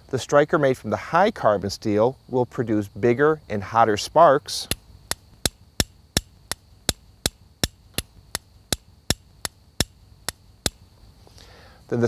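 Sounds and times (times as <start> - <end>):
steel striking flint clicks: 4.6 - 11.0.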